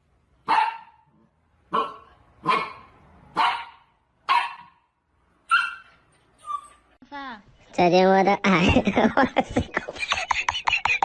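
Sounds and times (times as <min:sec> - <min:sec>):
dog barking: 0:00.4 - 0:04.9.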